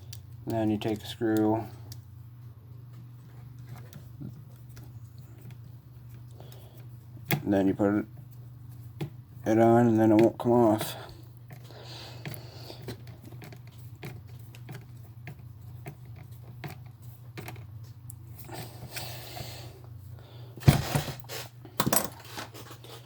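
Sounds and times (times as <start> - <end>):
steady low hum: 0.0 - 23.0
knocks of parts handled: 21.8 - 22.3.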